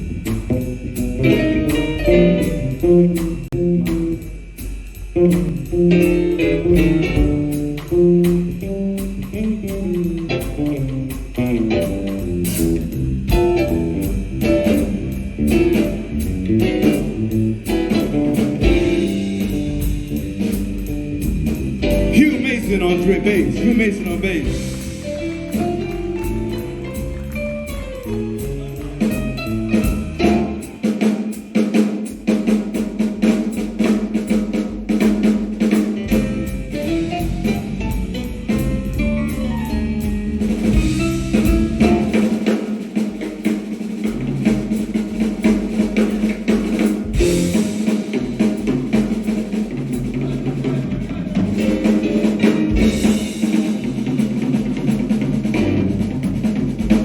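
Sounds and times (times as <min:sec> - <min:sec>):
bass and keyboard lines: 0:00.0 - 0:31.1, 0:35.6 - 0:42.6, 0:44.3 - 0:57.0
drum kit snare rolls and rimshots: 0:00.0 - 0:57.0
jazz combo playing: 0:00.0 - 0:57.0.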